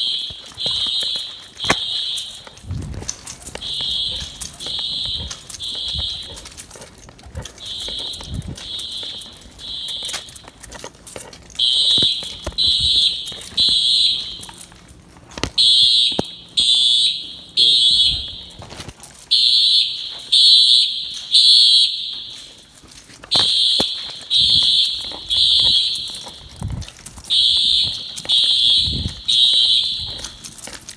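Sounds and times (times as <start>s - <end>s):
fire alarm horn blasts: 0.0s - 30.9s.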